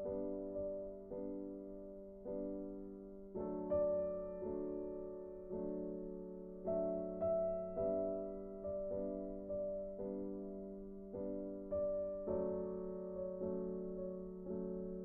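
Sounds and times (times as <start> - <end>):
soft slow piano melody: 0.0 - 15.0.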